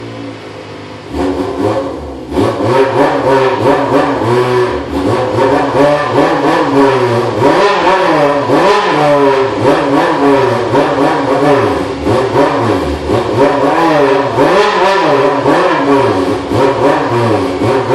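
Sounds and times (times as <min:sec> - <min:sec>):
motorcycle engine revving: 0:00.0 - 0:17.9.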